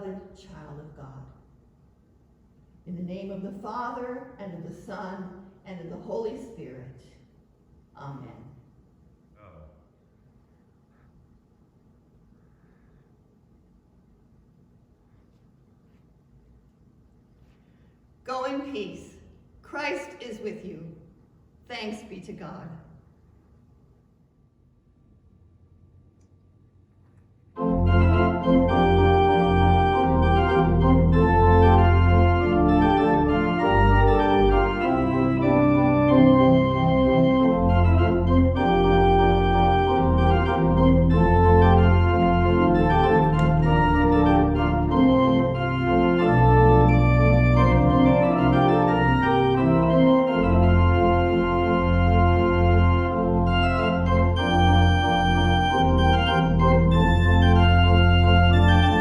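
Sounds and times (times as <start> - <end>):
organ chords with deep bass: 27.6 - 59.0.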